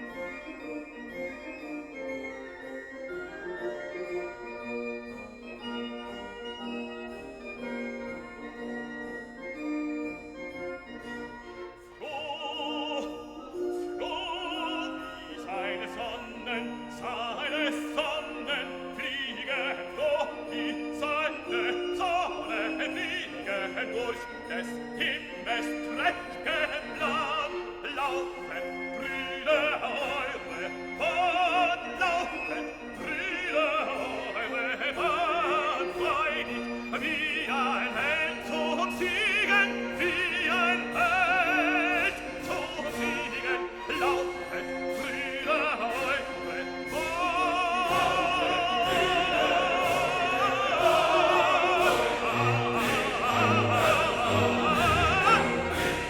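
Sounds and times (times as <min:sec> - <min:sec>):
orchestral accompaniment: 0:00.0 - 0:56.0
operatic voice singing: 0:11.8 - 0:56.0.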